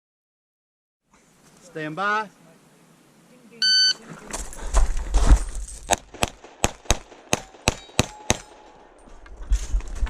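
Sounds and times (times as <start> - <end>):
shot timer beep: 3.6 - 4.0
pistol shots: 6.0 - 8.8.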